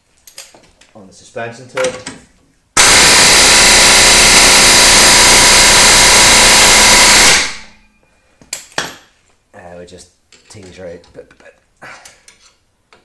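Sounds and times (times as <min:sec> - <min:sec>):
power tool motor running: 0:02.8 - 0:07.8.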